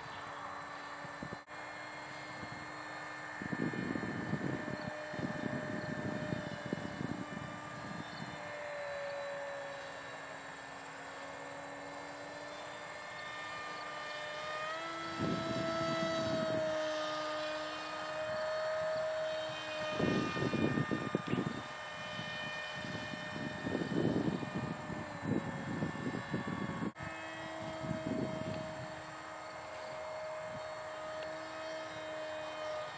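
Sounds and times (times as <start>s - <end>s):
model jet electric motor whining: 0.0s - 32.9s
wind buffeting microphone: 2.1s - 8.5s, 14.4s - 32.9s.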